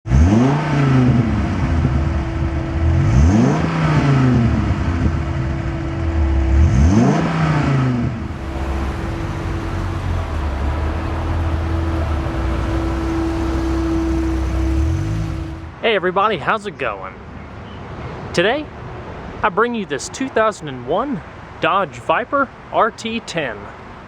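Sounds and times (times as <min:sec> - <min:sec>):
car engine revving: 0:00.0 - 0:15.8
car engine idling: 0:00.0 - 0:16.7.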